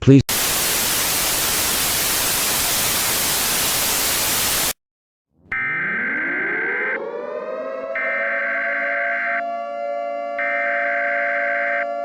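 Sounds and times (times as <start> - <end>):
static hiss: 0.3 - 4.8
siren rising in pitch: 5.5 - 12.0.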